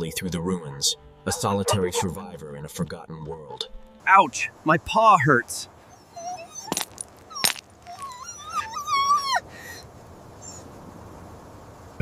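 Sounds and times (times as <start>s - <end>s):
dog whimpering: 1.3s - 2.3s, 5.9s - 9.8s.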